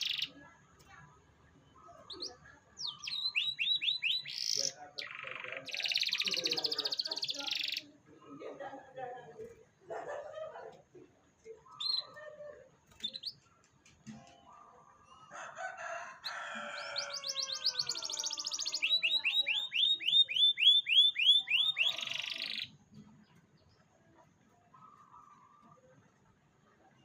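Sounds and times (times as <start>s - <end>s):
canary singing: 0.0s - 0.5s, 1.6s - 8.0s, 11.7s - 12.3s, 12.9s - 13.4s, 15.8s - 23.9s.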